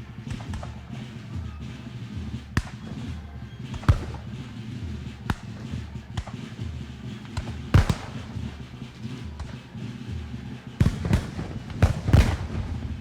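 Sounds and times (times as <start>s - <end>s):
gunshots cracking: 10.8s - 13.0s.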